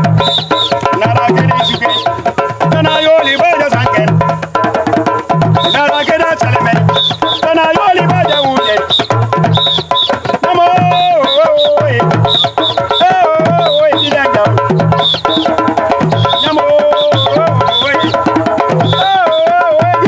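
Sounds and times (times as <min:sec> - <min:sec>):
deep bass drum: 0:00.0 - 0:20.0
hand drums: 0:00.0 - 0:20.0
person singing: 0:09.9 - 0:20.0.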